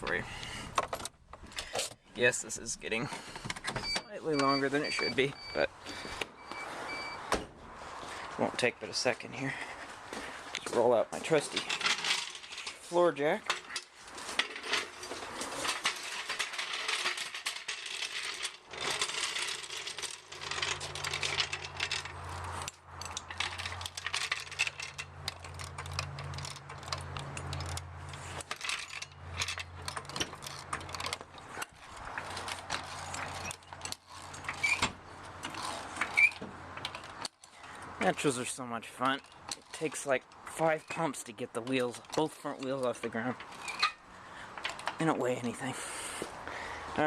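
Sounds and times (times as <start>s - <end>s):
floor jack clanking and ratcheting: 11.4s - 37.8s, 41.8s - 44.0s.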